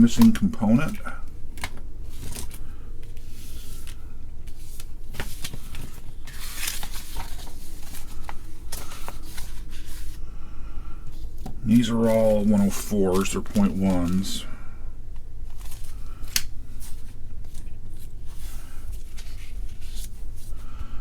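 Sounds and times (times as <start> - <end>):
steady low hum: 0.0 - 21.0
hands rummaging through components: 1.6 - 10.2.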